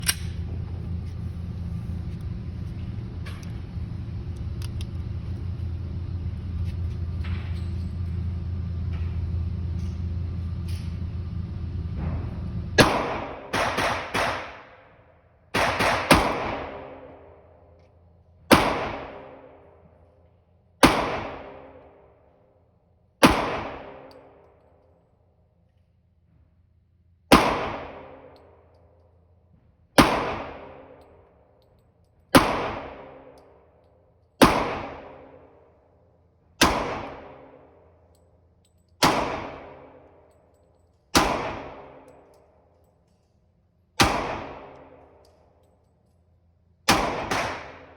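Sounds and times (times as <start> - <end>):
low rumble: 0.0 - 13.8
handgun shots echoing: 12.8 - 14.8, 15.6 - 17.2, 18.5 - 19.5, 20.8 - 21.9, 23.2 - 24.4, 27.3 - 28.6, 30.0 - 31.2, 32.3 - 33.6, 34.4 - 35.6, 36.6 - 37.9, 39.0 - 40.3, 41.1 - 42.4, 44.0 - 45.4, 46.9 - 47.9.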